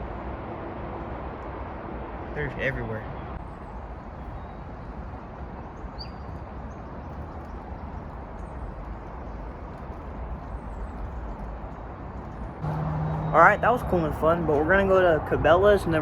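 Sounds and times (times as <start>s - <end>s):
low outdoor rumble: 0.0s - 16.0s
faint bird chirp: 3.1s - 11.5s.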